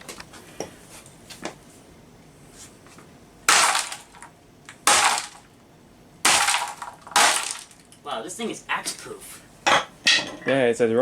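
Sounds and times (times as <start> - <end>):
axe striking metal: 4.9 - 5.4, 6.3 - 7.6.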